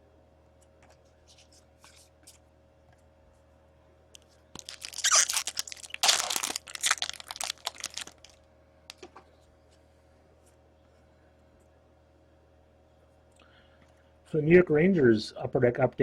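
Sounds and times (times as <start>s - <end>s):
wrapper tearing and crinkling: 4.6s - 8.4s.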